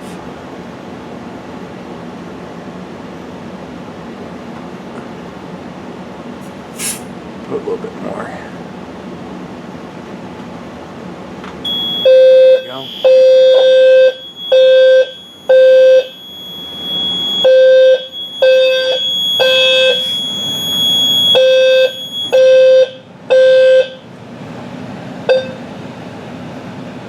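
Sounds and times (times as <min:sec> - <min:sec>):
fire alarm horn blasts: 0:11.6 - 0:24.1, 0:25.3 - 0:25.6
steady high tone: 0:11.7 - 0:24.1.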